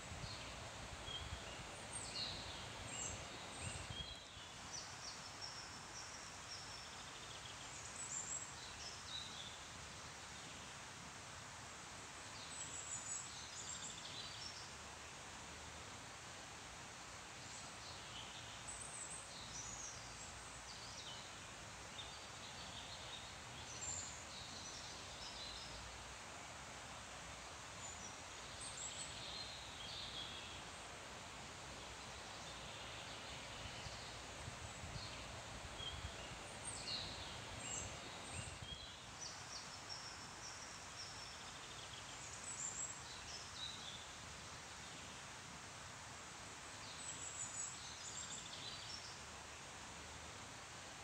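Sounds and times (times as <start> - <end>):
leaves rustling in wind: 0.0 - 51.0.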